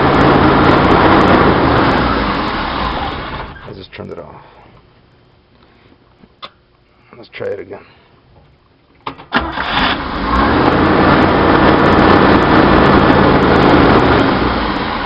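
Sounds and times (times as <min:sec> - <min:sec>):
engine running fast: 0:00.0 - 0:03.7, 0:09.4 - 0:15.0
engine cranking: 0:09.1 - 0:15.0.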